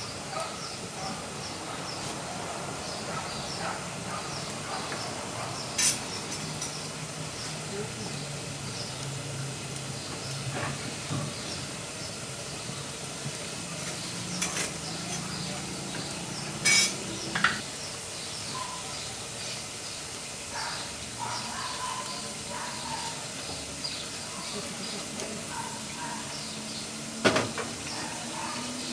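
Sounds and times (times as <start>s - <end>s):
wood fire crackling: 0.0s - 28.8s.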